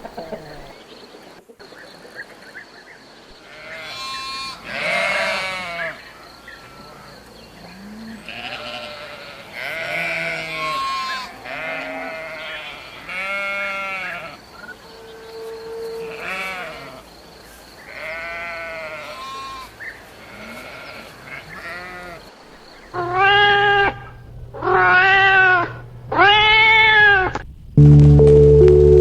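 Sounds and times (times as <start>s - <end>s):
livestock bleating: 3.4s - 14.4s, 15.0s - 17.1s, 17.8s - 22.3s, 22.9s - 27.4s.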